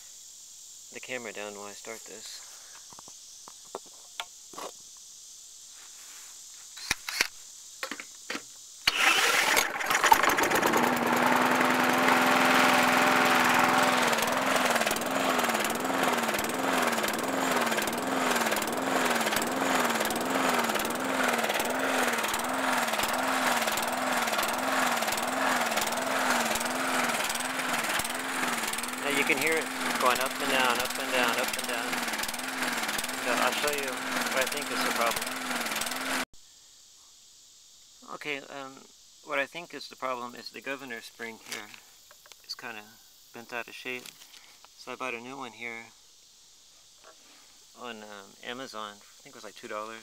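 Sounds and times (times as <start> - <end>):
lawn mower engine surging: 8.9 - 36.2.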